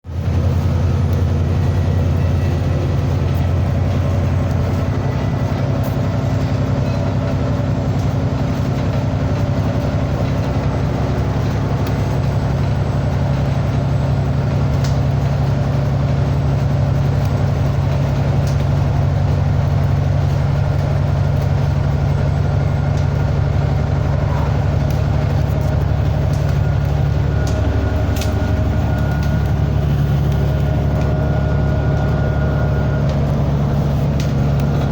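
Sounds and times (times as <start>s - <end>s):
low mechanical drone: 0.0s - 34.9s.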